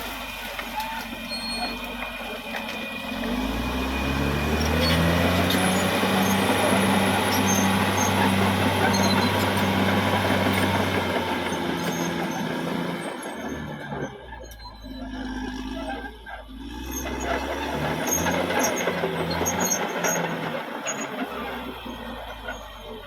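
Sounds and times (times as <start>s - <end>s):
bulldozer diesel engine revving: 0.0s - 23.0s.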